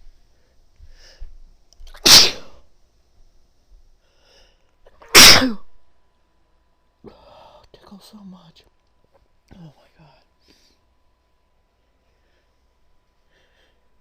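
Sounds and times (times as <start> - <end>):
woman sneezing loudly: 1.9 - 2.6, 5.0 - 5.7.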